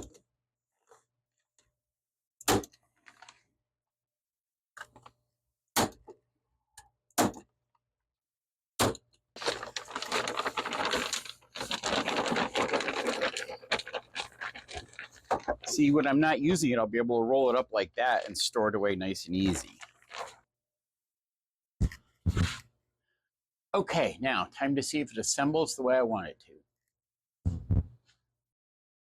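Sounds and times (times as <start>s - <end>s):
flexible sheet crackling as rolled: 9.4s - 15.8s.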